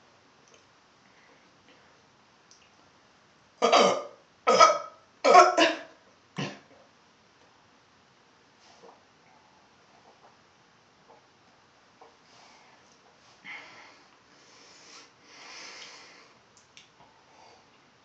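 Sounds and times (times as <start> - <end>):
person burping loudly: 6.4 - 6.7.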